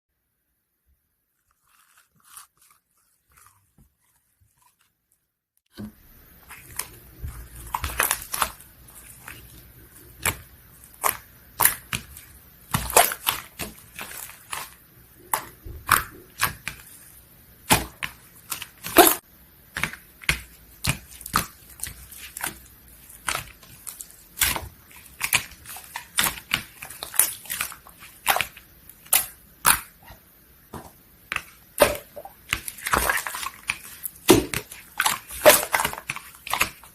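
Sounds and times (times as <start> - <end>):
slime being pressed and stretched: 10.1 - 16.8.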